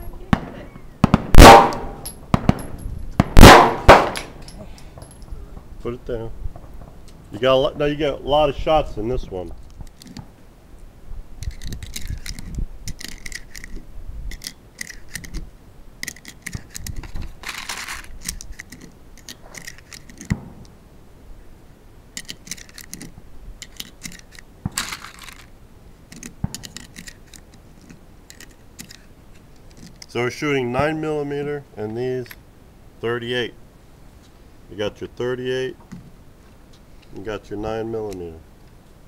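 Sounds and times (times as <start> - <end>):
metallic clicks of guns handled: 4.1 - 5.3, 9.5 - 10.2, 11.4 - 20.7, 22.2 - 30.2, 32.2 - 32.4.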